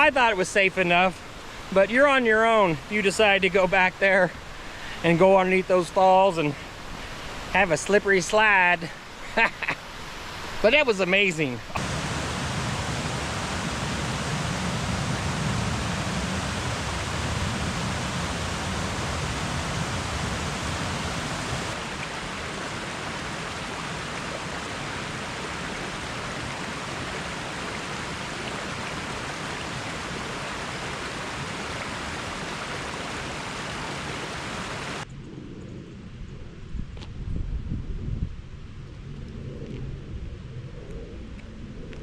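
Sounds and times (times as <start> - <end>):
waterfall rushing: 10.0 - 35.0.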